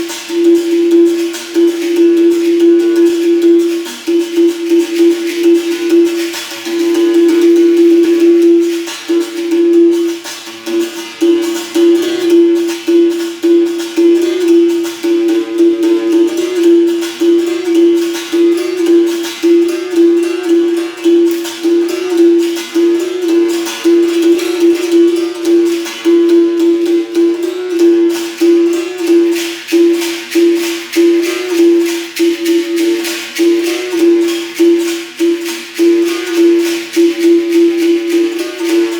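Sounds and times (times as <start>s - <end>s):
berimbau: 0.0s - 38.9s
rattle shaking: 0.0s - 38.9s.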